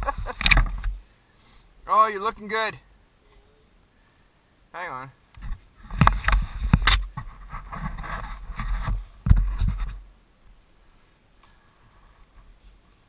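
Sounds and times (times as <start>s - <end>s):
scraping and knocking: 5.4s - 10.0s.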